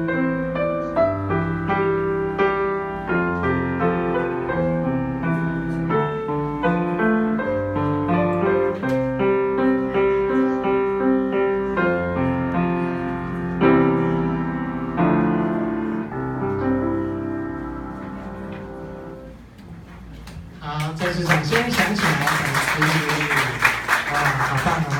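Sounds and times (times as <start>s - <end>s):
piano playing pop melody: 0.0s - 19.4s.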